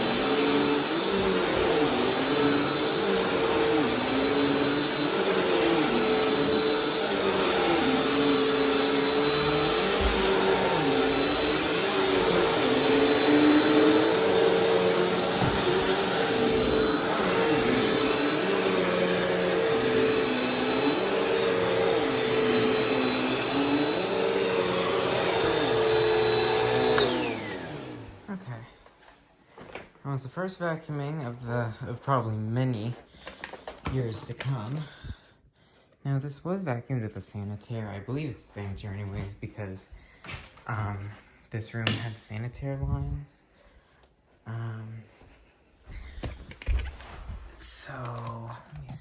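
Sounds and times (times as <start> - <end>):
vacuum motor winding down: 0.0 - 28.2
vacuum cleaner running on carpet: 0.0 - 28.8.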